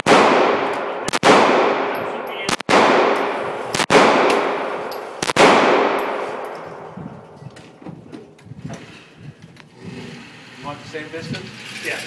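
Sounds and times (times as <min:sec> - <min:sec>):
gunshots echoing: 0:00.0 - 0:07.0.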